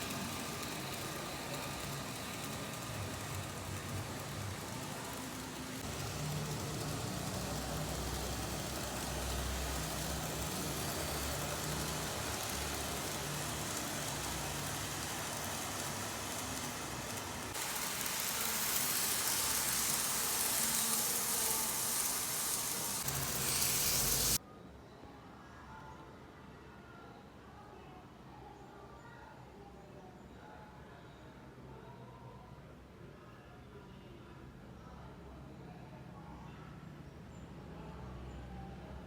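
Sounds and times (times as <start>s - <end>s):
model train running: 0.0s - 24.4s.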